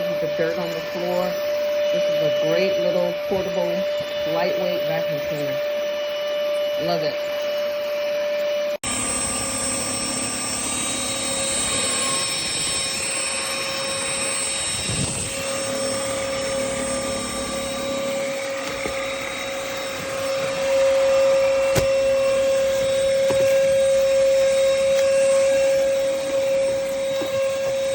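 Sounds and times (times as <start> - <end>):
vacuum cleaner running: 0.0 - 27.9.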